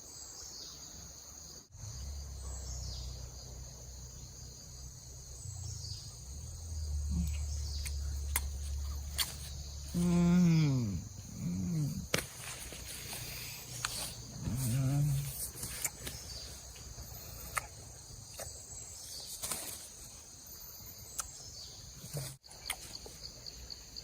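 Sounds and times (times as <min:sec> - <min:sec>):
high insect drone: 0:00.0 - 0:24.0
man humming: 0:07.0 - 0:08.0, 0:09.9 - 0:12.2, 0:14.3 - 0:15.6.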